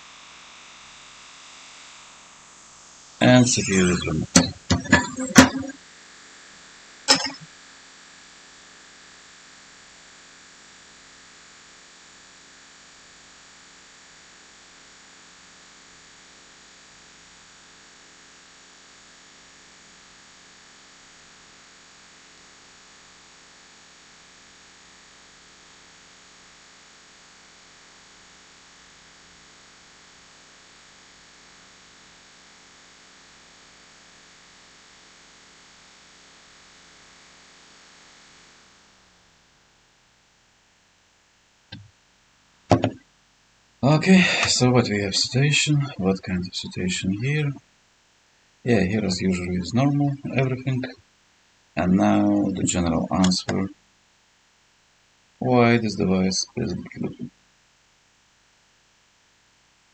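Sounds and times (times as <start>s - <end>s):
faint hiss: 0.0s - 5.7s, 43.8s - 47.6s, 48.2s - 51.0s, 51.8s - 53.7s, 55.4s - 57.3s
sharp click: 7.1s - 7.4s
low hum: 51.8s - 53.7s.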